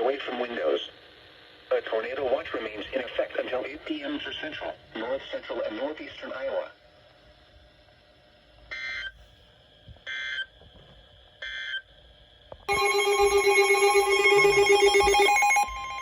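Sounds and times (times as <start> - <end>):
alert attention signal tone: 12.7 - 16.0
data header bursts: 12.7 - 16.0.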